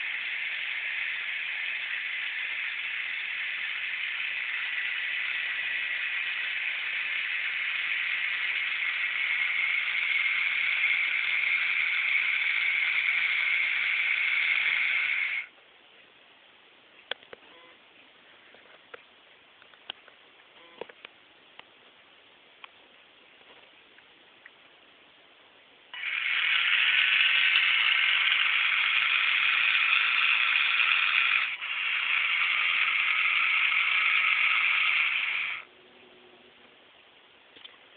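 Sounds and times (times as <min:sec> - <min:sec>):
small electric motor running: 0:00.0 - 0:15.5, 0:26.0 - 0:35.7.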